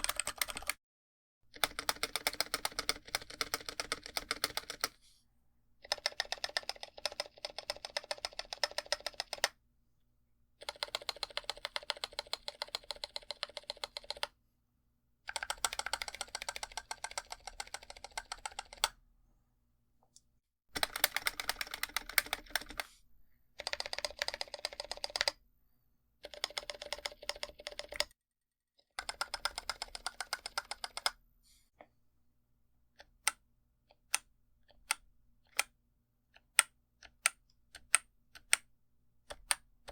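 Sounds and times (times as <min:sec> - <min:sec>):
mechanical keyboard typing: 0:00.0 - 0:00.8, 0:01.6 - 0:05.0, 0:05.8 - 0:09.6, 0:10.6 - 0:14.4, 0:15.3 - 0:19.0, 0:20.8 - 0:22.9, 0:23.6 - 0:25.4, 0:26.2 - 0:28.1, 0:29.0 - 0:31.2, 0:39.3 - 0:39.9.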